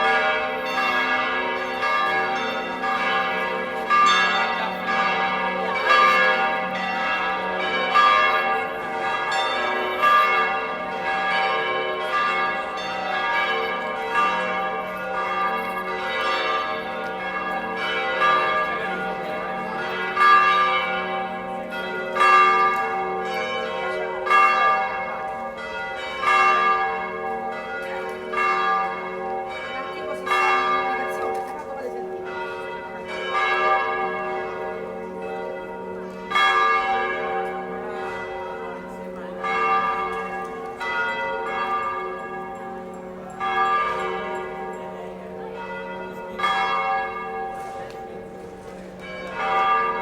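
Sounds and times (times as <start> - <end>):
church bells pealing: 0.0 - 50.0.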